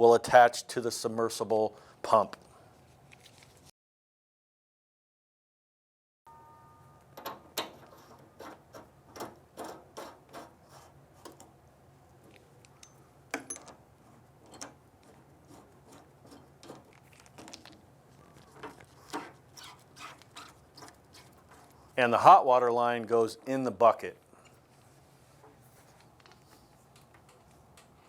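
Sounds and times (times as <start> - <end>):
hose fittings clicking and knocking: 7.2 - 10.6, 14.4 - 17.8.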